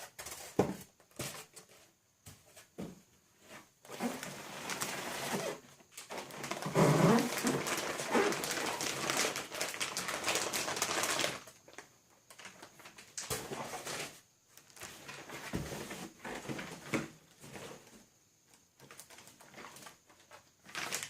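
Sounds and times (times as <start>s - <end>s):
packaging crackling rustle: 3.9s - 15.3s, 18.8s - 21.0s.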